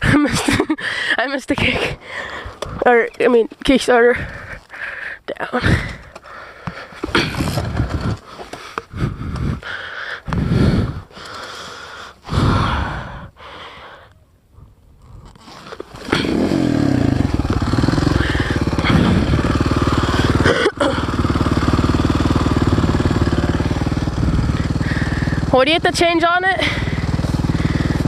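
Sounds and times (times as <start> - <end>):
dirt bike kick-start kicks: 1.5 - 4.6, 5.6 - 11.7, 15.0 - 28.0
dirt bike engine running: 5.6 - 9.8, 15.9 - 28.0.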